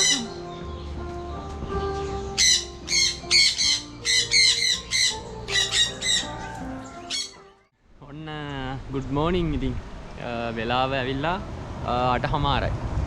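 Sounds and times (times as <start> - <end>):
bird squawking harshly: 0.0 - 0.4, 2.4 - 7.4
background music: 0.0 - 7.8.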